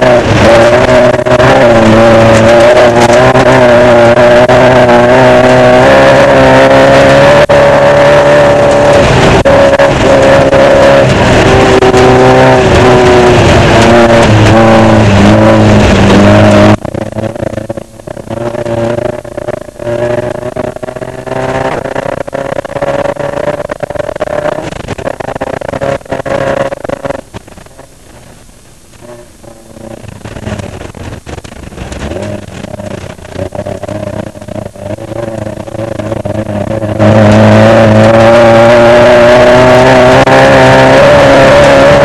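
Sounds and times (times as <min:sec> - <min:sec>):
race car engine running hard: 0:00.0 - 0:42.0
knocks and rattles: 0:29.4 - 0:37.6.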